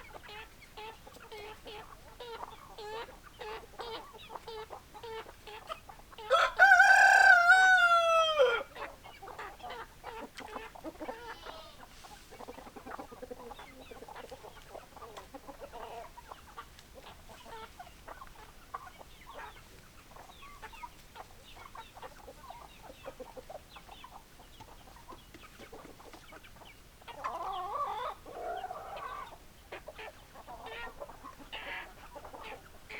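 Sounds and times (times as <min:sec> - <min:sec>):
flurry of chicken calls: 0:00.0 - 0:32.9
hens clucking: 0:00.0 - 0:32.9
rooster crowing: 0:06.3 - 0:08.8.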